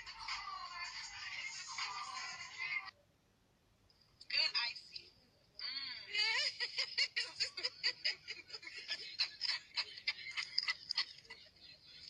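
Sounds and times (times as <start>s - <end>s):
child giggling: 6.1s - 12.0s.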